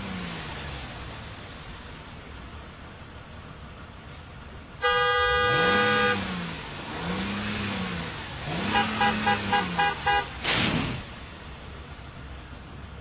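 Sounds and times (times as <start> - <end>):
rushing background noise: 0.0 - 13.0
short horn beeps: 4.8 - 6.2
vehicle horn long blast: 4.8 - 6.3, 8.6 - 10.4.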